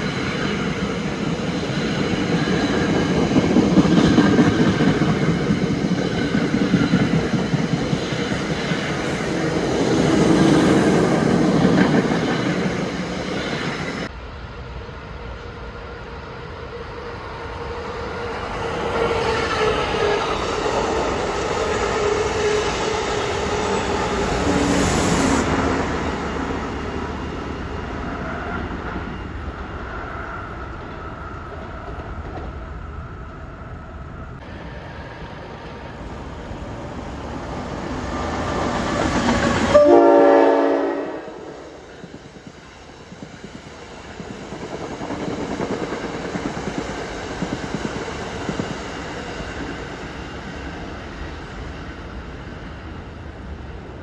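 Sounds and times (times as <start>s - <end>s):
train rail and wheel noise: 0.0s - 54.0s
train horn blast: 39.7s - 41.7s.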